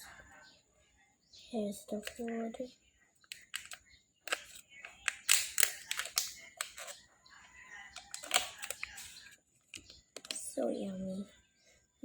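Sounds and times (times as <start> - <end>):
plastic container crinkles and clicks: 3.3 - 7.0, 8.0 - 10.5.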